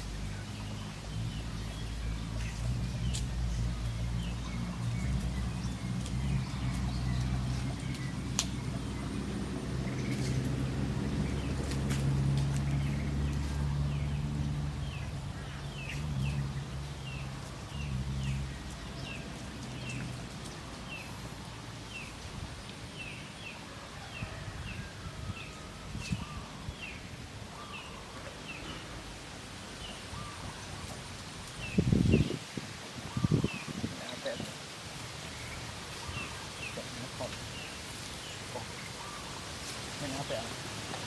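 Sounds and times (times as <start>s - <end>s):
low motor hum: 0.0s - 21.4s.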